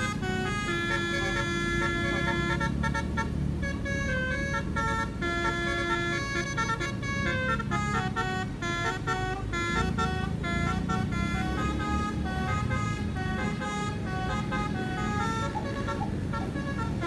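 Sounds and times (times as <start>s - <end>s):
air horn playing a melody: 0.0s - 17.0s
low engine rumble: 0.0s - 17.0s.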